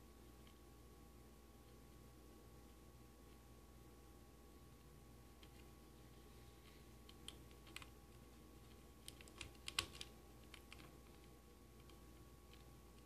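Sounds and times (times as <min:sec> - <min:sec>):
wires pressed into breadboard: 0:07.0 - 0:13.0.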